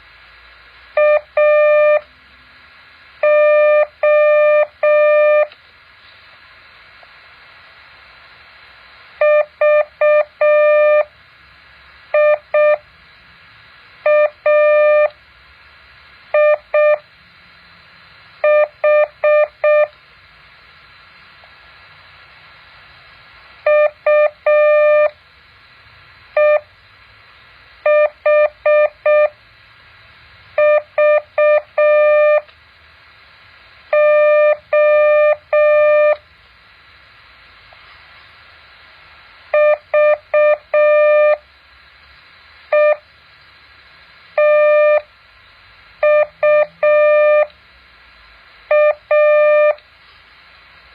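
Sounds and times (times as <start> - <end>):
faint steady hiss: 0.0 - 50.9
morse code beeps: 1.0 - 2.0, 3.2 - 5.5, 9.2 - 11.1, 12.2 - 12.8, 14.1 - 15.1, 16.4 - 17.0, 18.4 - 19.9, 23.7 - 25.1, 26.4 - 26.7, 27.9 - 29.4, 30.6 - 32.5, 33.9 - 36.2, 39.6 - 41.4, 42.7 - 43.0, 44.4 - 45.1, 46.0 - 47.5, 48.7 - 49.8.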